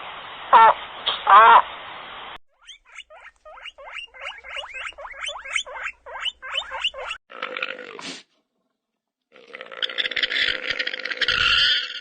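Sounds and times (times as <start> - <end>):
animal squeaking rapidly: 2.5 - 7.2.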